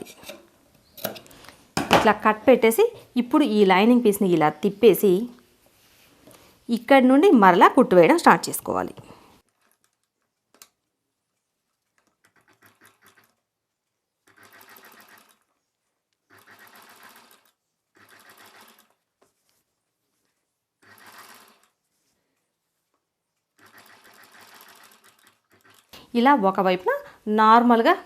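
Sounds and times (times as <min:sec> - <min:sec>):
sewing machine stitching: 0:11.9 - 0:13.5, 0:14.2 - 0:15.5, 0:16.3 - 0:19.0, 0:20.8 - 0:21.8, 0:23.6 - 0:26.1.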